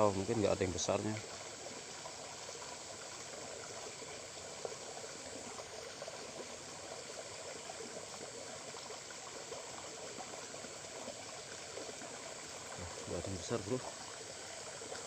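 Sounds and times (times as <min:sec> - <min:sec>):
stream flowing: 0:00.0 - 0:15.0.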